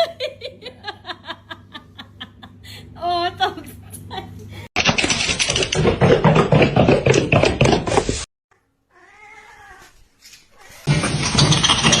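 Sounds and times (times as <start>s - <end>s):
cat yowling: 8.9s - 9.9s
cat meowing: 8.9s - 10.0s.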